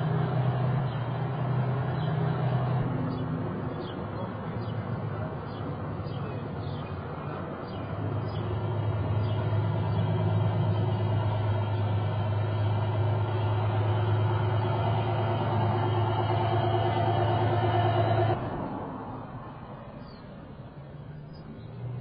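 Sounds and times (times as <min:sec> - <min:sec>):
low motor hum: 0:00.0 - 0:03.8, 0:07.8 - 0:19.8.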